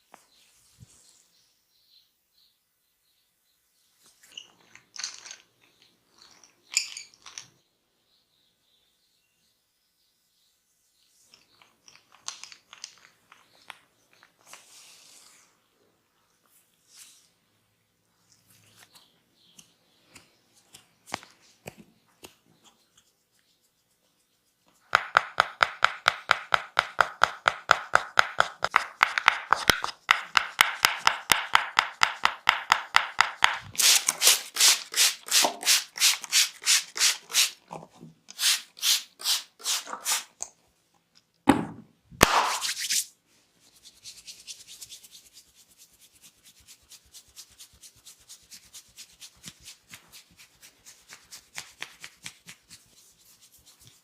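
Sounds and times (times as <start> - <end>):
hands massaging scalp: 27.9 - 37.7, 38.3 - 40.3, 42.2 - 54.0.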